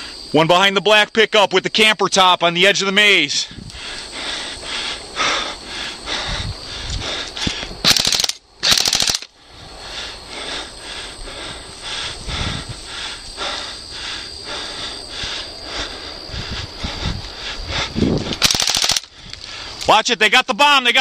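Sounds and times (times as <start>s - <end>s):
airsoft gun full-auto bursts: 7.8s - 9.3s, 18.4s - 19.1s
quiet regular ticking: 7.9s - 9.3s, 18.4s - 19.5s.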